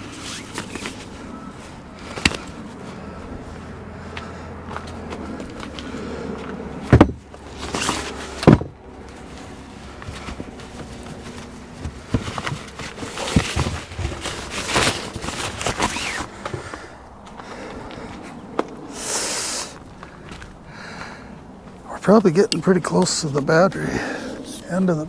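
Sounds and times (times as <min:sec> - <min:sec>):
footsteps: 0:00.0 - 0:08.4, 0:09.0 - 0:23.9
clicks and rustling: 0:07.0 - 0:16.8.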